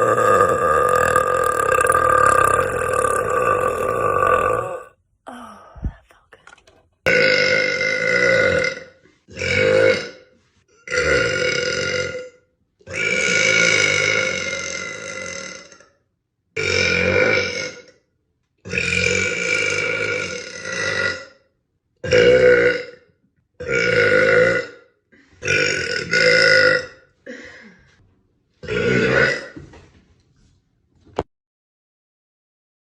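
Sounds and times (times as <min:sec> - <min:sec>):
women burping: 0:00.0 - 0:05.7.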